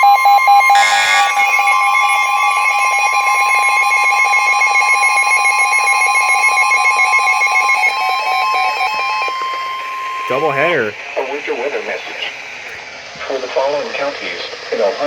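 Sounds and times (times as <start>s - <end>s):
warbling electronic alarm: 0.1s - 10.3s
steady electronic tone: 0.7s - 1.6s.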